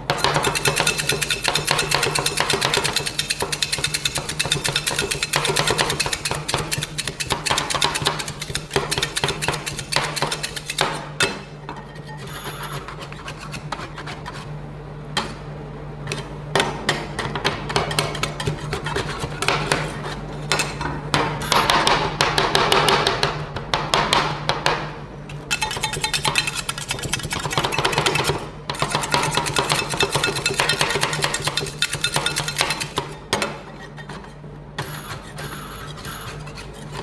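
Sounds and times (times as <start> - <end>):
metal spatulas chopping: 0.1 - 11.4, 23.8 - 33.6
spatulas scraping frozen plate: 0.2 - 11.0, 25.4 - 34.4, 35.7 - 37.0.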